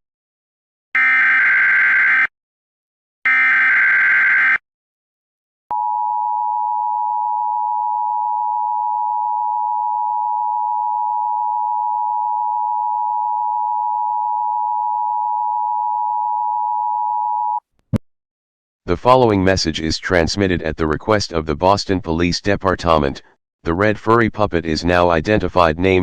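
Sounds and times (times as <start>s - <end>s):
screeching digital data warble: 1.0s - 2.3s, 3.3s - 4.6s
steady two-tone alert signal: 3.3s - 4.6s.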